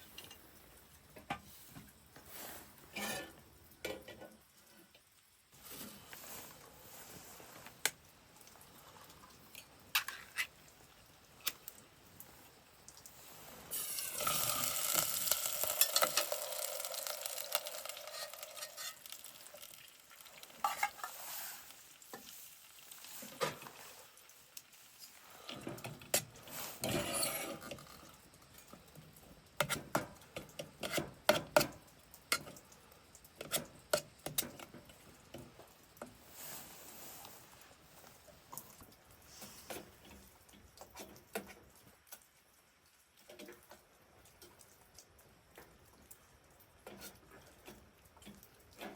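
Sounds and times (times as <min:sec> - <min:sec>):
sizzling in a hot pan: 0:00.0 - 0:04.3, 0:05.1 - 0:38.5
utensil stirring in pan: 0:01.4 - 0:04.2, 0:05.5 - 0:41.8, 0:46.8 - 0:48.9.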